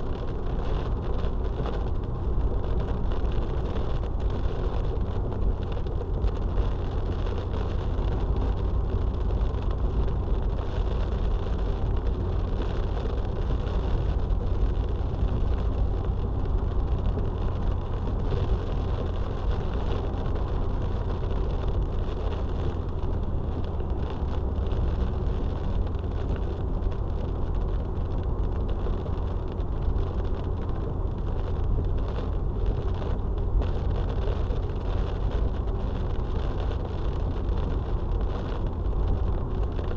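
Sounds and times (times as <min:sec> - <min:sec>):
car engine and road rumble: 0:00.0 - 0:39.9.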